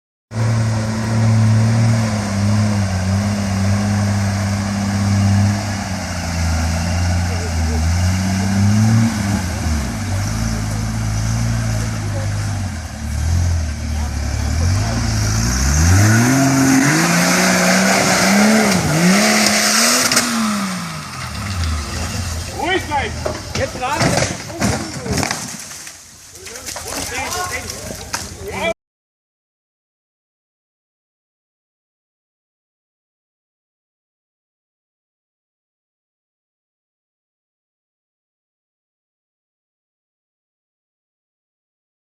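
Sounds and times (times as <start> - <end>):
vehicle engine running: 0.3 - 24.0.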